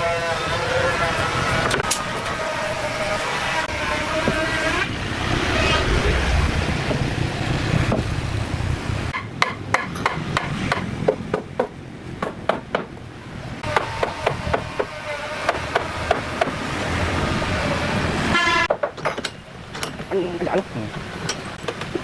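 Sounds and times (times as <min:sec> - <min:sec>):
hammer blows on wood: 0:13.6 - 0:17.0.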